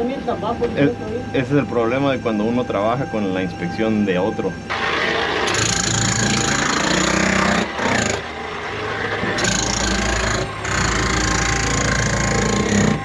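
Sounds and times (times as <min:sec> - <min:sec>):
power tool running: 0:04.7 - 0:13.0.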